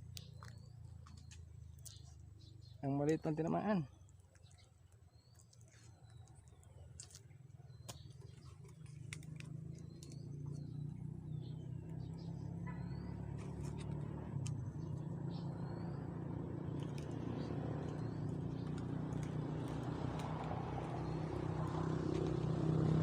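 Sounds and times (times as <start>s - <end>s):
bird chirping: 0.0s - 22.6s
low motor hum: 0.0s - 23.0s.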